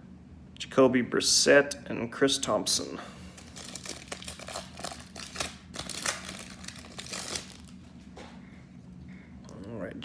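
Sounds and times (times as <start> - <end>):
card pack wrapper crinkling: 3.3 - 7.8
cards rustling: 3.3 - 7.9.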